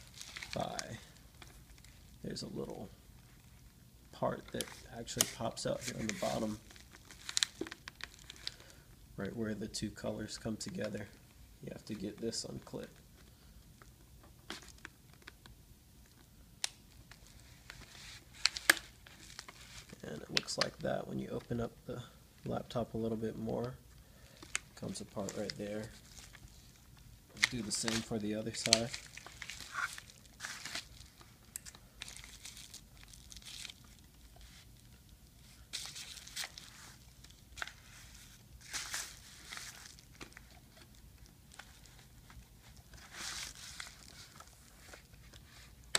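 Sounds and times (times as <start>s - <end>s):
plastic scraping and crinkling: 4.4s - 8.7s, 24.2s - 45.9s.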